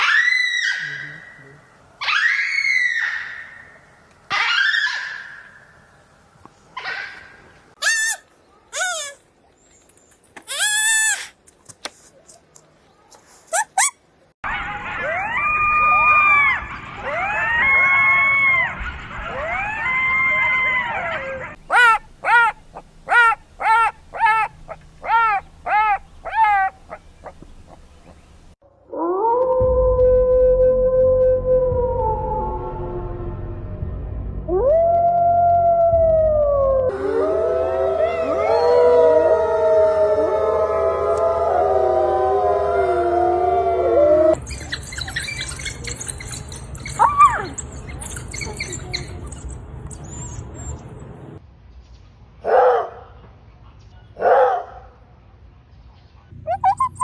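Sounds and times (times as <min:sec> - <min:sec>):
wild canid yelping: 0:07.8 - 0:09.2, 0:21.5 - 0:28.6, 0:44.5 - 0:50.9, 0:56.5 - 0:57.0
low rumble: 0:29.7 - 0:36.9.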